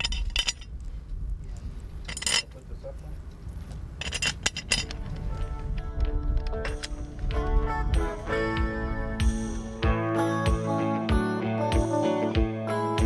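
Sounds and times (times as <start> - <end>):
metal clinks and knocks: 0.0 - 0.8, 1.8 - 7.2
background music: 5.4 - 13.0.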